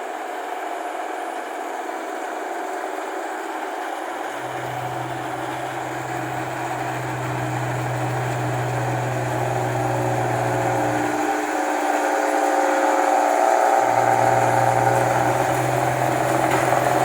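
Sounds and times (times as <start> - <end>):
engine with loud exhaust: 0.0 - 17.0
low steady hum: 4.4 - 11.4.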